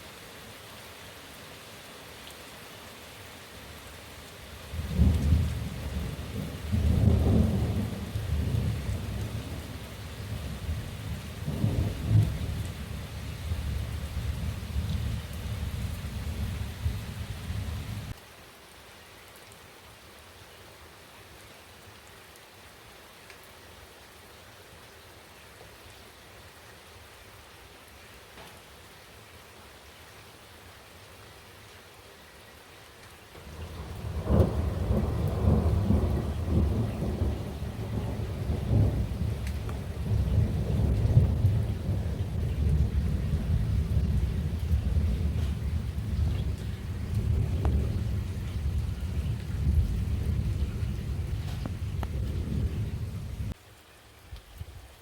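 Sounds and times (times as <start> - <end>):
rain hissing: 2.8 - 18.2, 33.3 - 53.6
thunder rumbling: 4.8 - 18.2, 33.4 - 53.6
sharp thunder cracks: 33.4 - 53.5.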